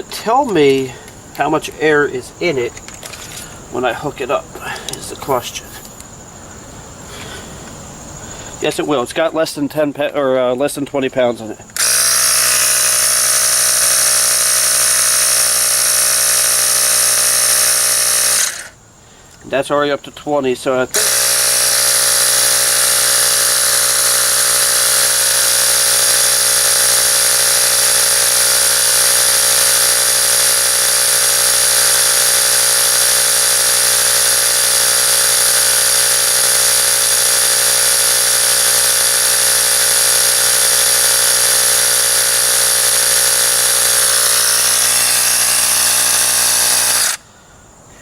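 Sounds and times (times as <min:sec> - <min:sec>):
tire inflator running: 0:11.8 - 0:18.8, 0:20.9 - 0:47.2.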